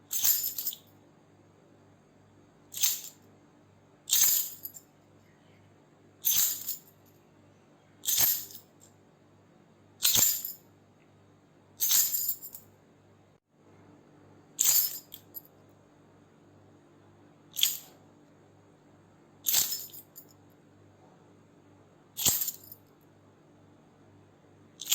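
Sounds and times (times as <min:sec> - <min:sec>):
keys jingling: 0:04.1 - 0:04.8, 0:06.3 - 0:06.9, 0:08.0 - 0:08.6, 0:14.6 - 0:15.4, 0:17.6 - 0:17.9, 0:19.5 - 0:20.2, 0:22.2 - 0:22.8.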